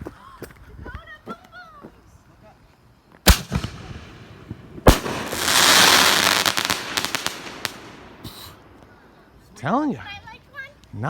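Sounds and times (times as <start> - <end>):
firework crackling with pops: 3.2 - 9.3
firework booms: 3.3 - 9.0.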